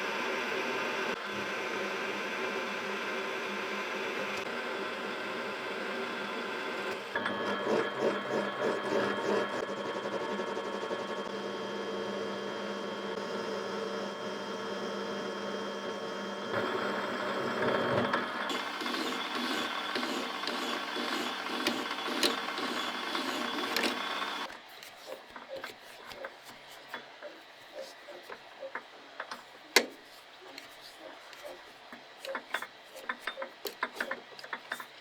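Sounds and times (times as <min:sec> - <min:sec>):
small electric motor whining: 0:12.7 - 0:24.6.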